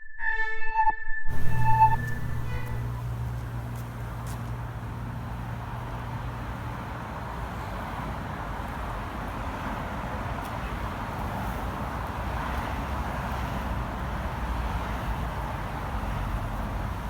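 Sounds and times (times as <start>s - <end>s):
steady rumbling noise: 1.2s - 10.3s.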